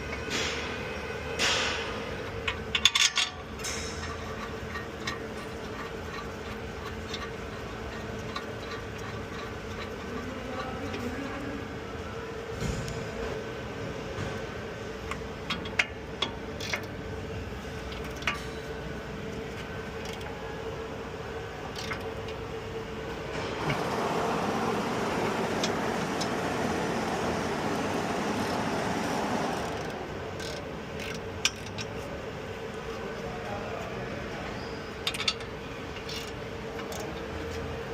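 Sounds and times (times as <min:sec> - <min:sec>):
car rolling rumble: 0:23.1 - 0:30.4
rushing noise: 0:23.5 - 0:29.9.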